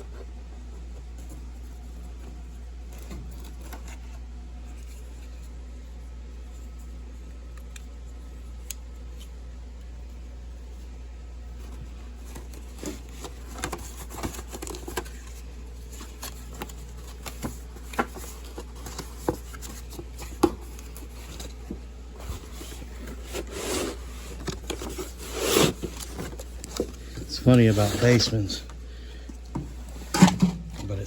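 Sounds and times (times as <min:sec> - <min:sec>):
steady low hum: 0:00.0 - 0:31.0
rustling scrape: 0:11.5 - 0:28.6.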